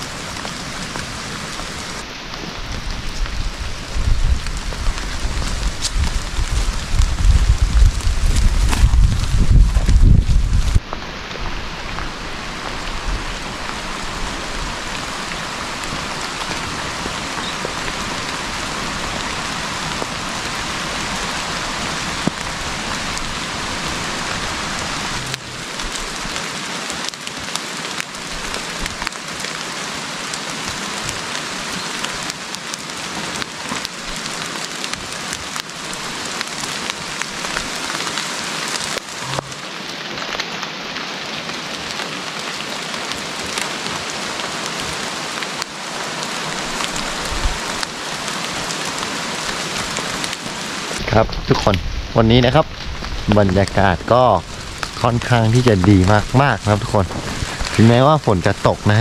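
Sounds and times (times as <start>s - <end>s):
rain drops ticking: 0.0s - 59.0s
low rumble: 2.6s - 10.8s, 56.2s - 57.9s.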